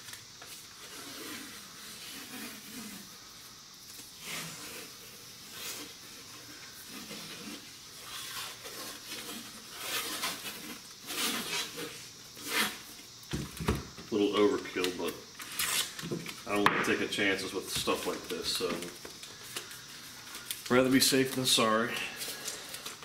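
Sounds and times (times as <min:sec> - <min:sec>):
duct tape ripping off roll: 0:00.0 - 0:13.7, 0:14.4 - 0:17.1
rustling handling: 0:14.1 - 0:23.0.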